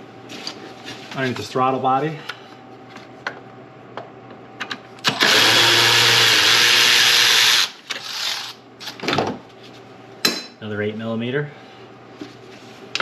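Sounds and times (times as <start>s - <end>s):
power tool running: 5.0s - 8.6s.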